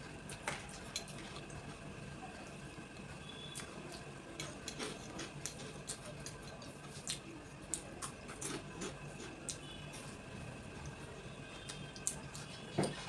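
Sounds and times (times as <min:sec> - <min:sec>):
chewing clicks and smacks: 0:03.5 - 0:09.7.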